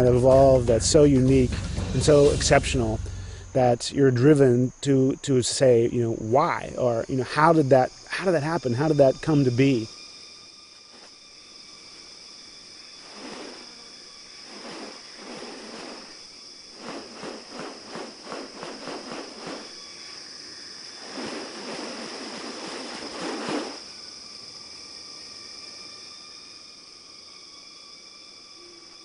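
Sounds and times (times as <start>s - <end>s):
high-pitched insect chorus: 0.0s - 29.0s
short hissy bursts: 13.0s - 20.2s, 20.9s - 24.0s.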